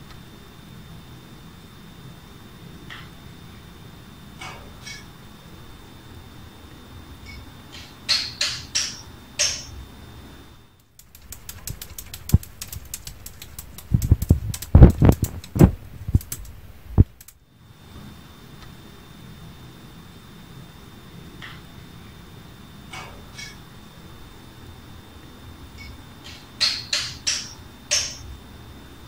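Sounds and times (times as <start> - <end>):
clicks and taps: 10.8 - 17.4.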